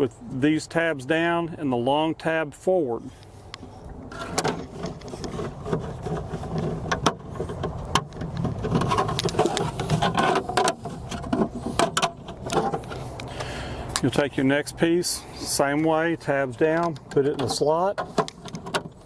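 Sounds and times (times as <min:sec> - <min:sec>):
plastic panel clicking and rattling: 0:04.1 - 0:13.0, 0:16.7 - 0:19.0.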